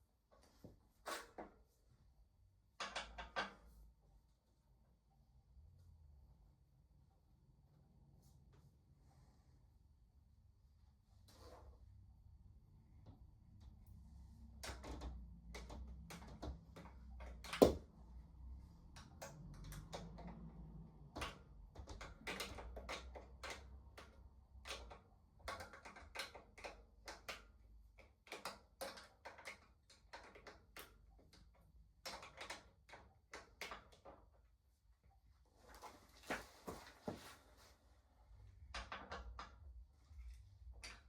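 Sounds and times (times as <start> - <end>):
tools and bike parts clicking: 18.9 - 34.4.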